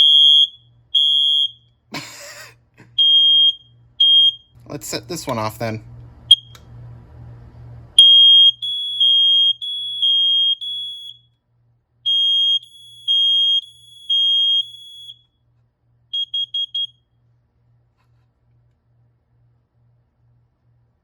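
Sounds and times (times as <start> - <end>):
smoke alarm short chirps: 0.0 - 1.6, 3.0 - 4.6, 8.0 - 11.3, 12.1 - 15.3, 16.2 - 17.0
smoke alarm high-pitched beeps: 0.0 - 1.7, 3.0 - 4.6, 6.3 - 6.6, 8.0 - 11.3, 12.1 - 15.3, 16.1 - 17.1.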